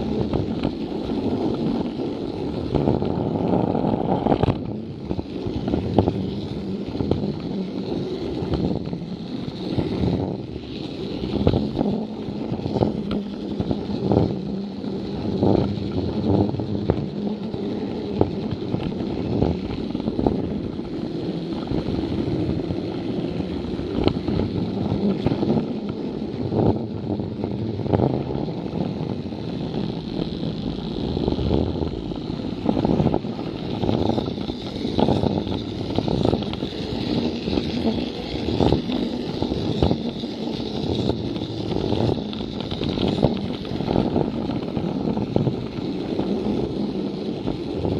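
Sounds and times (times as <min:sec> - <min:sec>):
toy train motor whirring: 0:00.0 - 0:47.9
wheels clicking on rail joints: 0:00.0 - 0:47.9.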